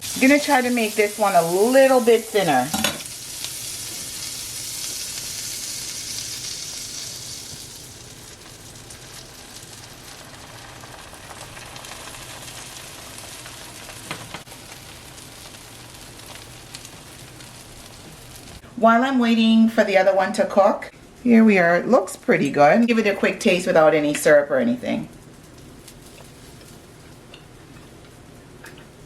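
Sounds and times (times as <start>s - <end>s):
batter sizzling in a frying pan: 0.0s - 18.6s, 25.1s - 29.0s.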